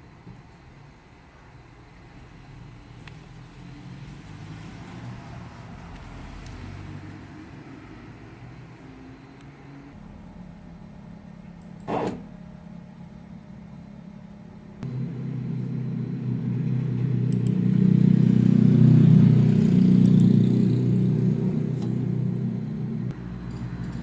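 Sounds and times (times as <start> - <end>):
stepper motor humming: 7.5 - 23.2.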